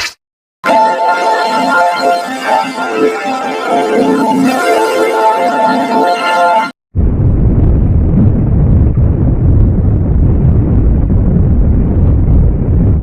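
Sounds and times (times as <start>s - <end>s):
loud low rumble: 7.0s - 13.0s.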